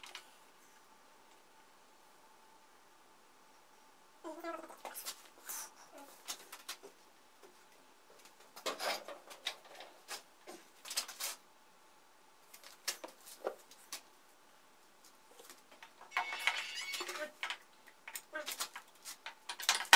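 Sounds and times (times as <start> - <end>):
small parts and tools clicking: 15.7 - 19.9.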